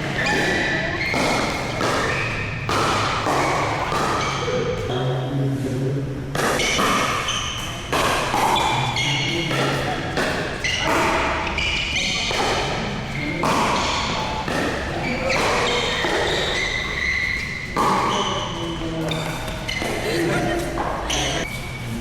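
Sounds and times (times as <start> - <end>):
players' voices: 0.0 - 22.0.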